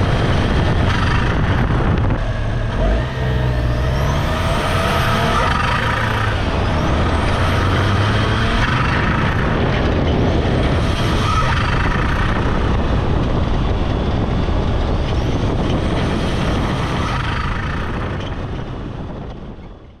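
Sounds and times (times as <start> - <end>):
turbocharged car engine running: 0.0 - 19.6
road noise: 0.0 - 20.0
wind noise: 0.0 - 20.0.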